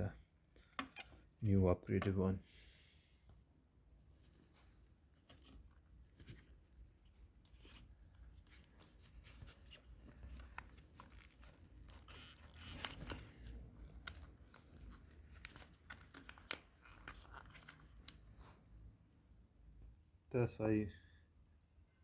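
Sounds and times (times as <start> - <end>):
plastic and metal clicks and scrapes: 7.4 - 18.2.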